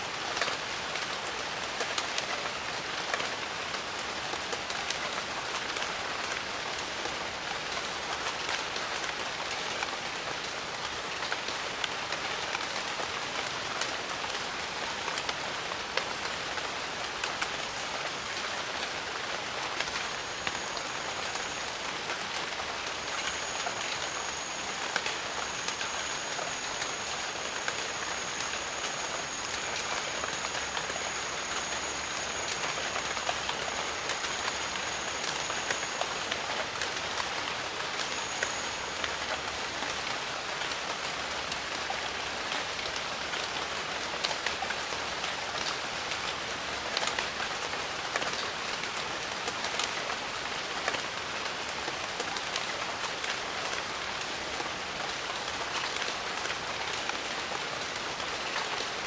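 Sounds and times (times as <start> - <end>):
steady rainfall: 0.0 - 59.0
high-pitched whine: 12.3 - 41.6
raindrops ticking: 15.1 - 39.5.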